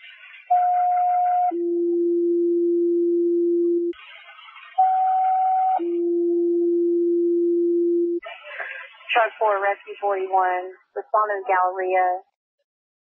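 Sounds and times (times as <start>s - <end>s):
radio static hiss: 8.2s - 11.9s.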